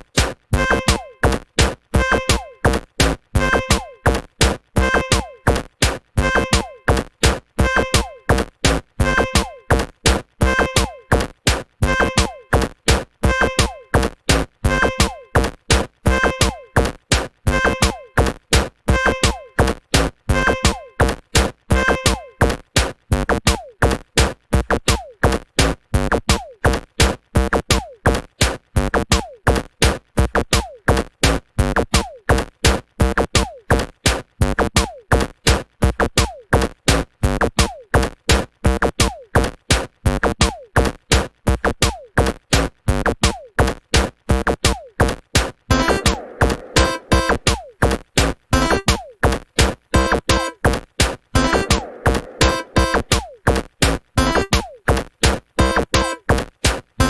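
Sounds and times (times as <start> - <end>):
drum machine beat: 0.0 - 57.0
short synth notes: 45.7 - 47.6, 51.4 - 53.2.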